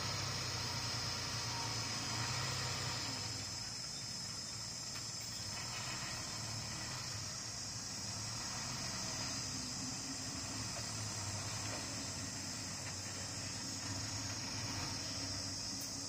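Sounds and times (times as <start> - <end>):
heavy machine engine rumbling: 0.0 - 16.0
insects chirring: 0.0 - 16.0.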